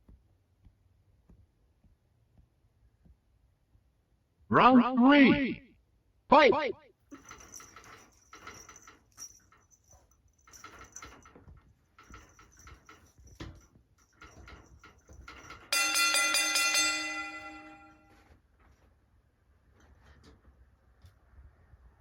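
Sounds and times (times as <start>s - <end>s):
ringing struck tone: 15.7s - 18.1s.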